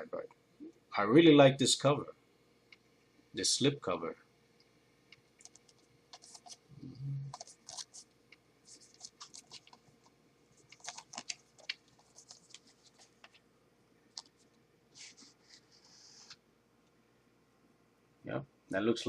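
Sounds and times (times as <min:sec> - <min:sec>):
plastic and card scraping: 0:05.4 - 0:06.6, 0:07.3 - 0:08.0, 0:08.7 - 0:09.8, 0:10.6 - 0:13.4.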